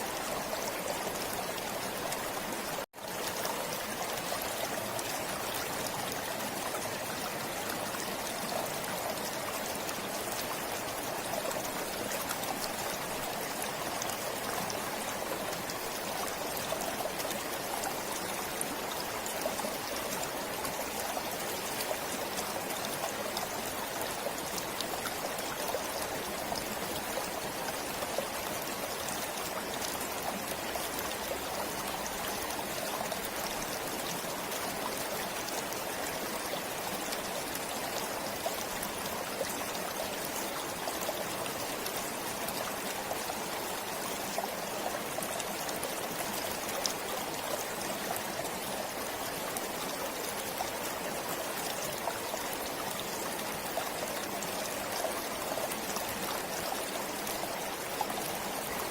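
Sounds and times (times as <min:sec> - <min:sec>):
small stream flowing: 0:00.0 - 0:58.9.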